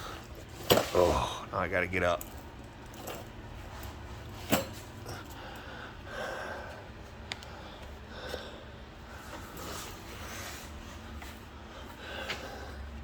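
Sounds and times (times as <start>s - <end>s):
person breathing hard: 5.0s - 13.0s.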